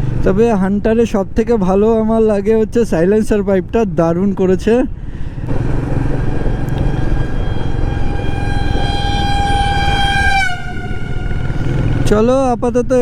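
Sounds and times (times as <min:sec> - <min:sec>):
road noise: 0:00.0 - 0:13.0
motorcycle engine running: 0:05.4 - 0:12.3
vehicle horn blast: 0:06.6 - 0:12.4.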